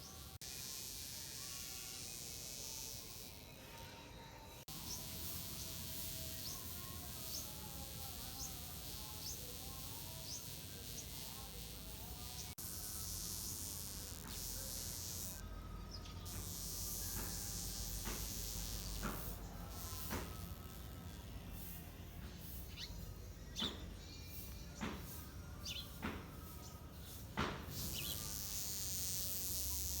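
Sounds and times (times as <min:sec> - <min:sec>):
wasp buzzing: 0:00.0 - 0:03.8, 0:04.6 - 0:15.4, 0:16.3 - 0:21.9, 0:27.0 - 0:30.0.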